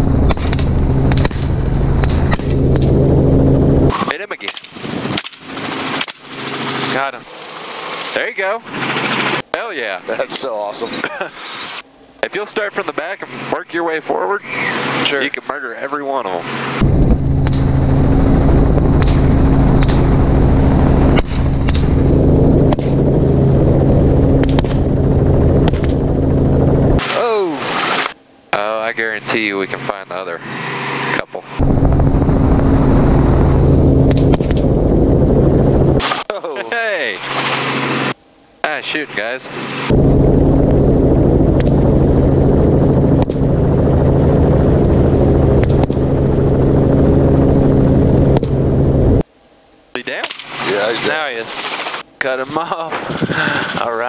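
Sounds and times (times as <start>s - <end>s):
helicopter engine and rotor drone: 0.0s - 49.3s, 49.9s - 54.0s
rifle shots: 4.4s - 6.4s.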